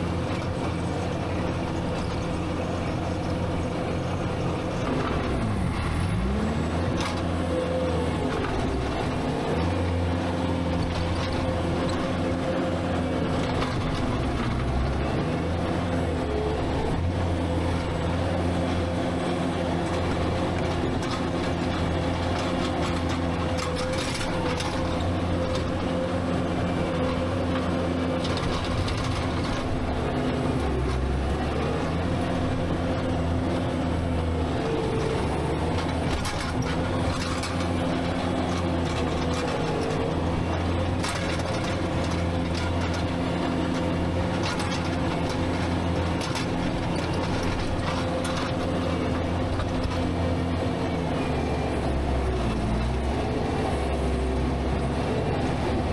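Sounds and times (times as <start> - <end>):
skid steer engine running: 0.0 - 55.9
metallic clanks and rattles: 19.8 - 26.2, 26.9 - 29.9, 34.9 - 50.2.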